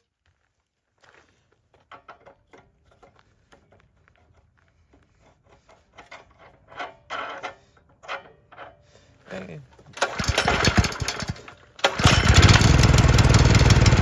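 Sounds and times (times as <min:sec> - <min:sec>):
small parts and tools rattling: 0:09.4 - 0:13.3.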